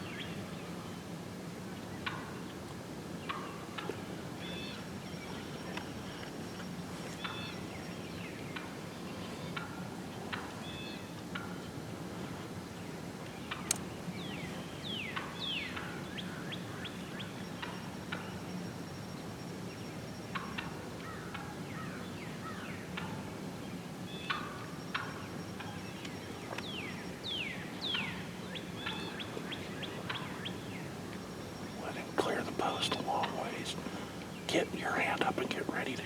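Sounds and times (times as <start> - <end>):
wild turkeys gobbling: 31.8 - 36.0.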